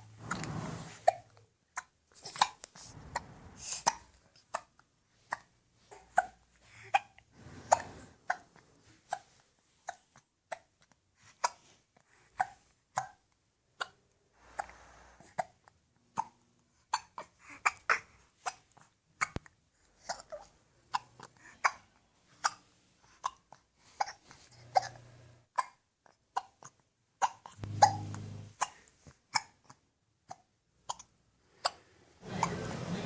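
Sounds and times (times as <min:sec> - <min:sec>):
baby hiccuping: 0:01.0 - 0:02.6, 0:03.6 - 0:08.5, 0:15.3 - 0:31.8.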